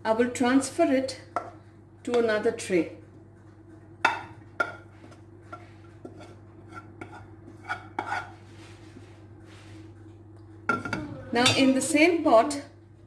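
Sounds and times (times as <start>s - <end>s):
steady low hum: 0.0s - 13.0s
utensil knocking and scraping pan: 4.1s - 8.4s.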